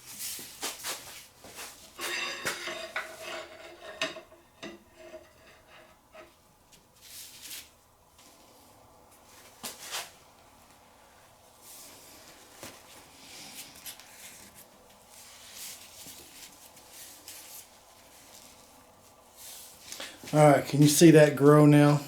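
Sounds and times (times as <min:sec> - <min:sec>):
metal tool ticking and scraping: 0:02.0 - 0:06.4.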